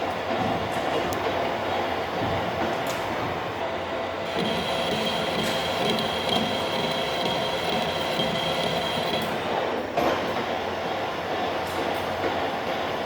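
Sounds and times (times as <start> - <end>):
high whine of cutting: 4.2 - 9.6
metal lathe running: 4.2 - 9.6.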